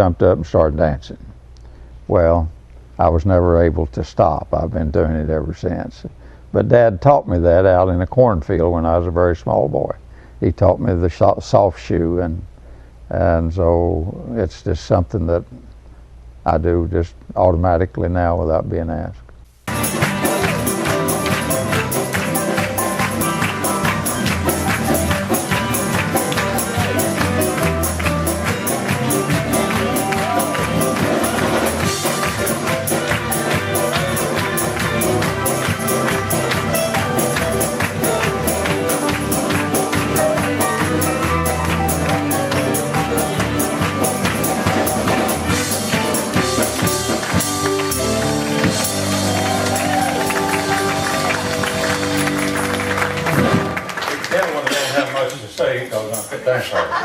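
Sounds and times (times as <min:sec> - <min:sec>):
upbeat instrumental music: 0:19.7 - 0:55.0
quick percussion beat: 0:19.7 - 0:55.1.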